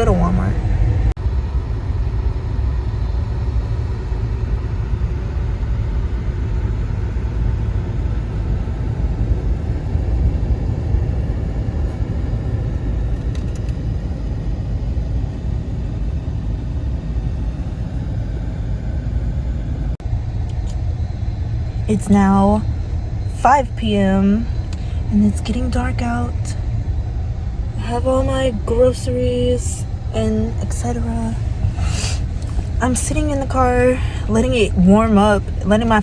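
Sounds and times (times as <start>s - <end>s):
car engine and road noise: 0.0s - 36.0s.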